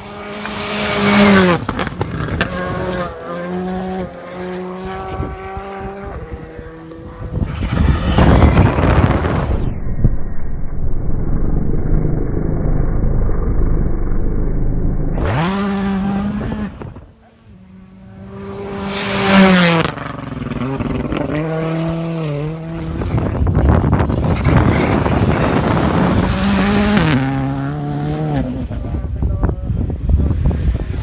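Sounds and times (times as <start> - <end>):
rally car engine revving: 0.0 - 9.6, 11.1 - 31.0
muffled rumble: 5.0 - 19.1.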